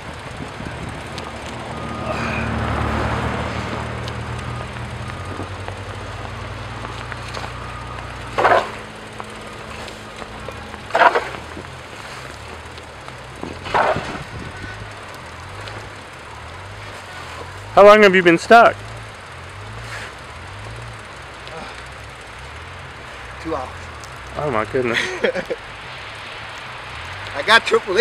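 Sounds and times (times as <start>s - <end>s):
vehicle engine running: 0.0s - 28.0s
scraping sounds: 6.8s - 16.0s, 19.7s - 20.3s.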